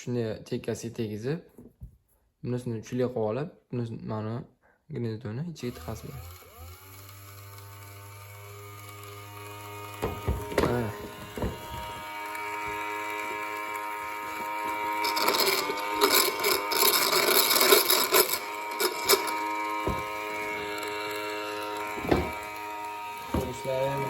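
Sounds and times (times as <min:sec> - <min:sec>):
small motor whining: 0:05.6 - 0:24.0
motor rattling: 0:05.7 - 0:24.0.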